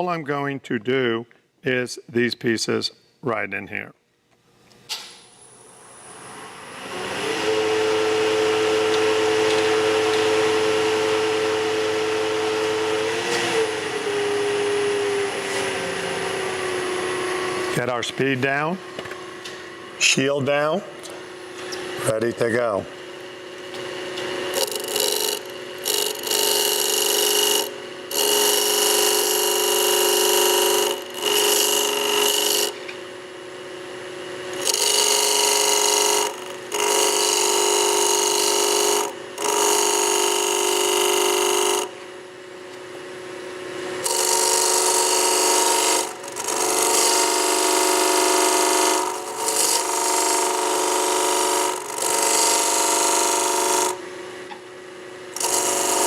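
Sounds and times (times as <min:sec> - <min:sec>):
lathe humming: 0:05.7 - 0:33.4, 0:34.1 - 0:41.9, 0:44.0 - 0:54.0, 0:55.3 - 0:56.0
chisel rasping on spinning wood: 0:24.5 - 0:32.8, 0:34.6 - 0:41.9, 0:44.0 - 0:53.9, 0:55.4 - 0:56.0.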